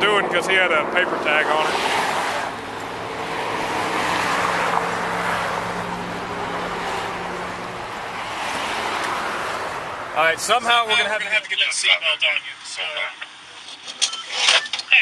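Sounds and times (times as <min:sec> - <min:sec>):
low engine hum: 0:00.0 - 0:11.2
road noise from passing cars: 0:00.0 - 0:13.7.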